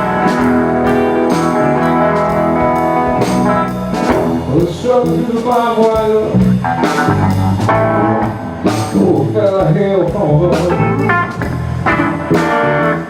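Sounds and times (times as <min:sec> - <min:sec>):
wavering lead melody: 0:00.0 - 0:05.4
drum beat: 0:00.0 - 0:13.0
guitar chords: 0:00.0 - 0:13.0.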